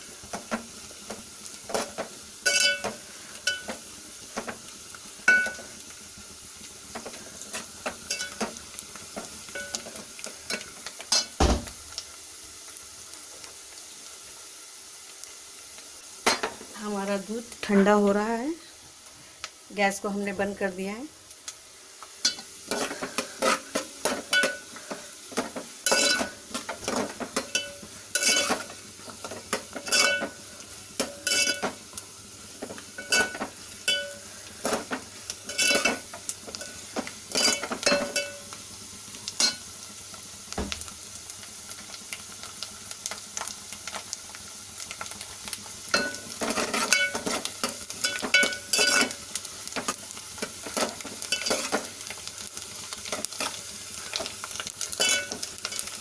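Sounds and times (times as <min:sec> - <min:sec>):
light frying sizzle: 0:00.0 - 0:56.0
metal spatula clinking against pan: 0:02.4 - 0:03.8, 0:05.3 - 0:05.6, 0:08.1 - 0:08.5, 0:09.5 - 0:09.9, 0:22.2 - 0:24.6, 0:25.8 - 0:26.3, 0:26.9 - 0:28.7, 0:29.5 - 0:30.4, 0:31.0 - 0:31.7, 0:33.0 - 0:34.2, 0:35.5 - 0:36.0, 0:36.6 - 0:38.4, 0:45.9 - 0:49.2, 0:50.8 - 0:51.8, 0:55.0 - 0:55.9.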